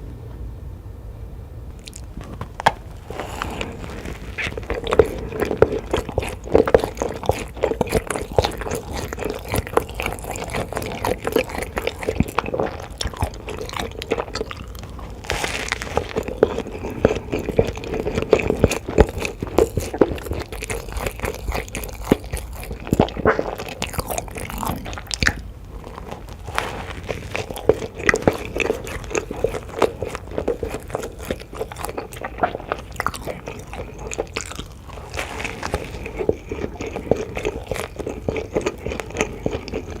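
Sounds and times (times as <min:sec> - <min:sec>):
crunchy bites and chewing: 0:01.8 - 0:40.0.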